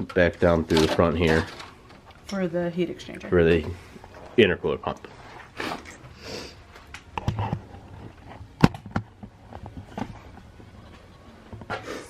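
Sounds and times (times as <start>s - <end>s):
wiring harness clicks and rustles: 0.0s - 2.4s.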